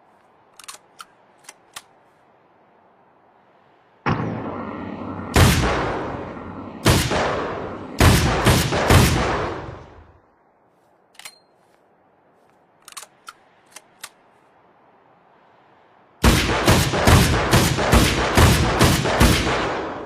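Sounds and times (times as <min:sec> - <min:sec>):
faint small clicks: 0:00.2 - 0:02.2, 0:11.1 - 0:11.8, 0:12.4 - 0:14.2
rifle shots echoing: 0:04.1 - 0:10.2, 0:16.2 - 0:20.0.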